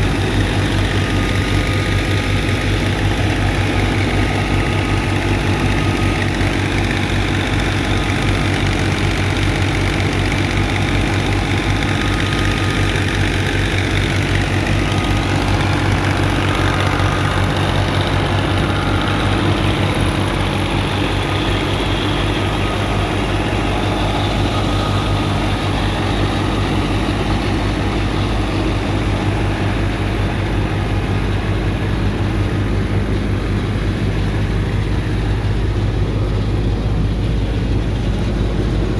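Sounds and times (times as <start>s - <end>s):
threshing machine engine drone: 0.0s - 38.9s.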